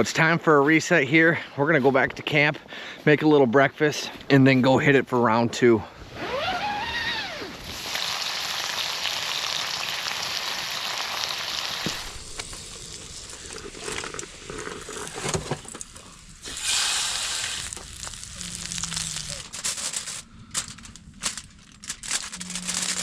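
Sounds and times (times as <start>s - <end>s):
bacon sizzling in a frying pan: 7.7s - 15.2s, 15.8s - 19.4s.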